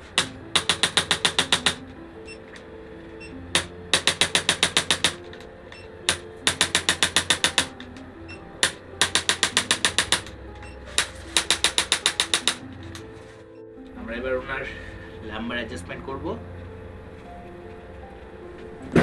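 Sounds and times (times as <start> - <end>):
soft background music: 0.0 - 19.0
adjusting gun rapid clicks: 6.1 - 7.9, 11.0 - 13.0.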